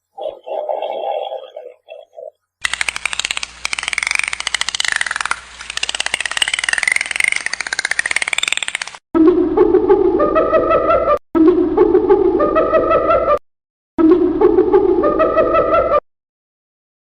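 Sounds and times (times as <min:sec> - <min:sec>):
animal buzzing rattle: 0:02.6 - 0:09.0.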